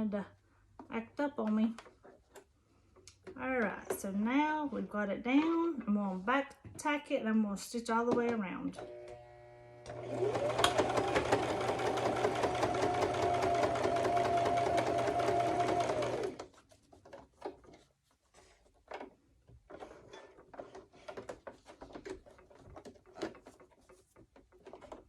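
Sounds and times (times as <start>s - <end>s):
sewing machine stitching: 8.8s - 16.5s.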